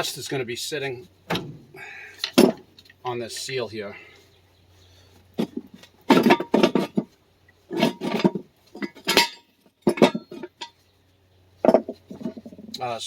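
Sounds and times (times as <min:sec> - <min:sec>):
metal tools clinking: 0:07.7 - 0:10.8.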